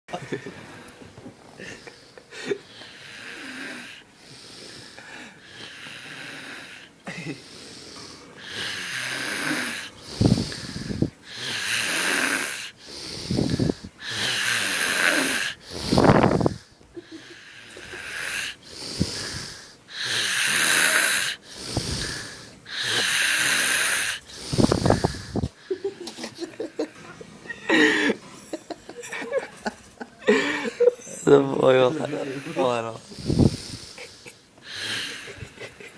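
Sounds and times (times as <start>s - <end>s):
wheezy snoring: 2.7s - 25.6s, 31.9s - 35.7s
deep rattling snorts: 8.6s - 16.7s, 18.1s - 25.5s, 33.1s - 34.2s.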